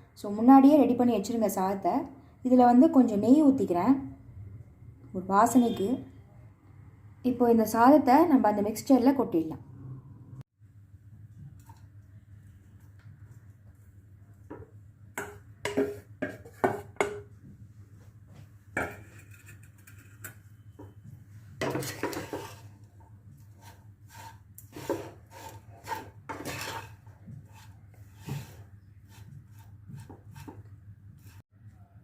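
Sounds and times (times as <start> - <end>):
spoon scraping cooking pan: 14.5 - 17.2, 21.6 - 22.8, 23.4 - 31.4.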